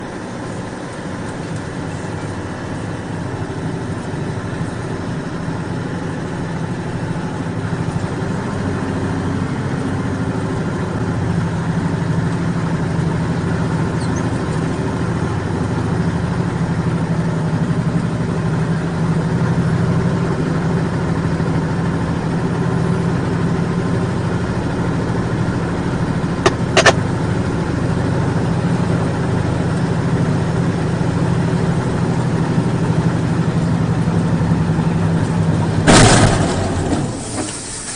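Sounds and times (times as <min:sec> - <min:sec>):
truck diesel engine labouring: 0:00.0 - 0:37.9
sharp clicks: 0:26.4 - 0:27.0.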